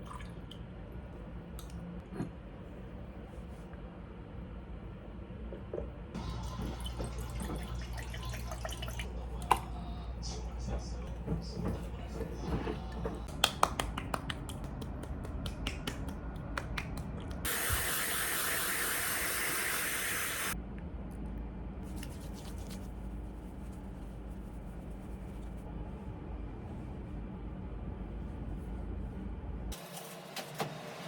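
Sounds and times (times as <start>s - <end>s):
spray hissing: 17.5s - 20.6s.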